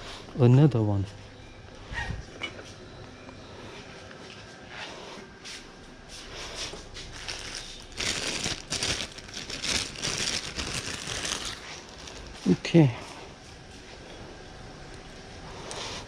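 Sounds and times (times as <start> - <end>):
packaging crinkling and rustling: 7.0 - 12.6.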